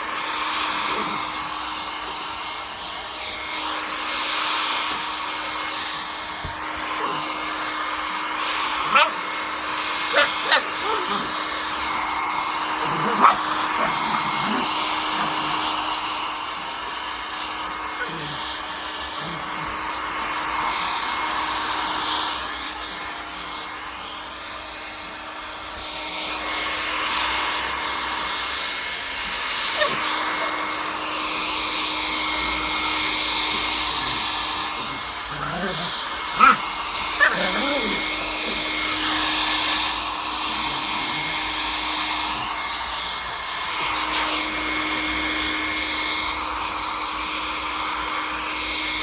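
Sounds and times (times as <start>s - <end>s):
hair dryer running: 0.0s - 49.0s.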